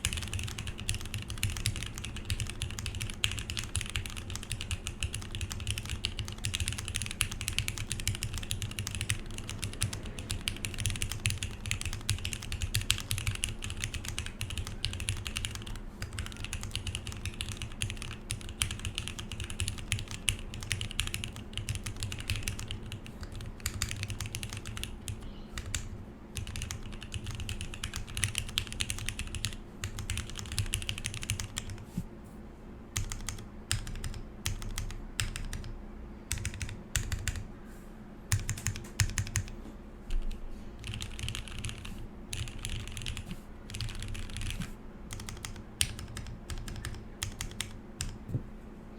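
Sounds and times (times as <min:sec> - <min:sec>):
fast typing on mechanical keyboard: 0:00.0 - 0:31.8, 0:33.0 - 0:37.5, 0:38.3 - 0:48.2.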